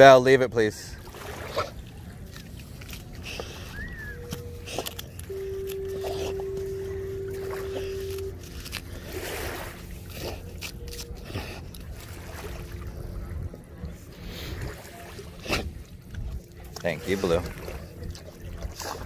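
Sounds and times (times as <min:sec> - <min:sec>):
water sloshing and splashing: 0:00.6 - 0:19.0
steady single-pitched tone: 0:03.8 - 0:11.2
low wind rumble: 0:06.5 - 0:16.7.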